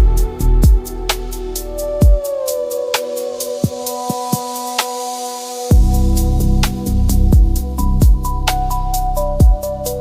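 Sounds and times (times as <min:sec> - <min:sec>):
soft kick drum: 0:00.0 - 0:00.8, 0:05.7 - 0:05.9, 0:07.3 - 0:08.2, 0:09.4 - 0:09.6
deep house music: 0:00.0 - 0:04.7, 0:05.3 - 0:10.0.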